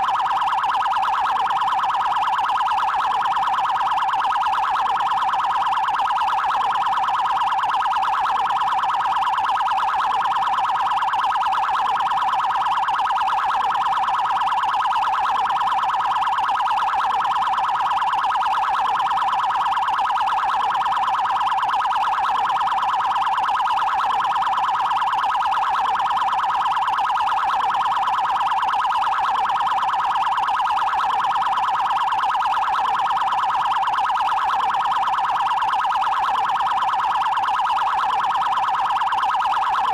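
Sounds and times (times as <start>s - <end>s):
electronic siren warbling: 0.0s - 39.9s.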